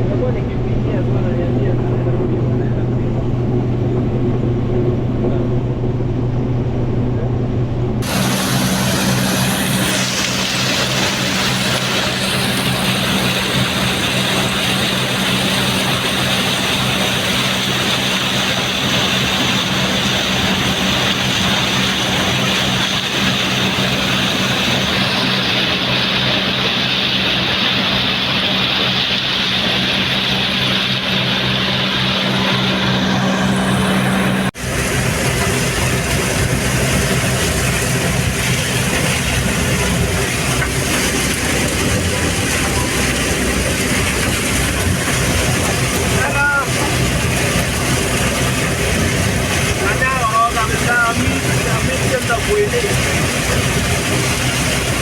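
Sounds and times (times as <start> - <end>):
combine harvester engine drone: 0.0 - 55.0
mechanical rush: 0.0 - 55.0.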